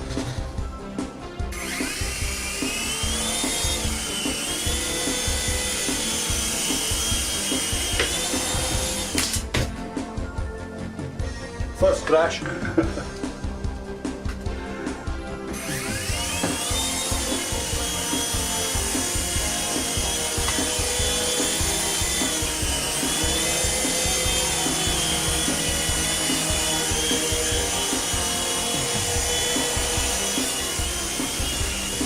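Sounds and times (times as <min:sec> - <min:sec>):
toy helicopter motor whine: 0:01.6 - 0:09.4, 0:15.6 - 0:32.0.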